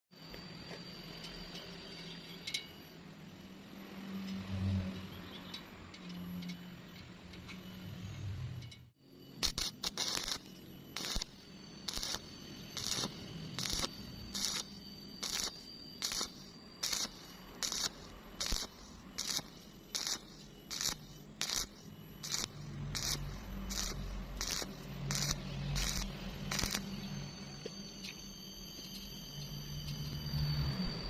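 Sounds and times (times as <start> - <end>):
welding arc hissing bursts: 9.4 - 27.0.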